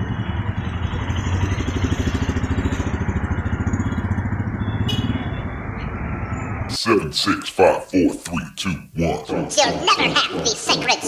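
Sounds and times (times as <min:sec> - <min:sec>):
motorcycle engine idling: 0:00.0 - 0:06.6.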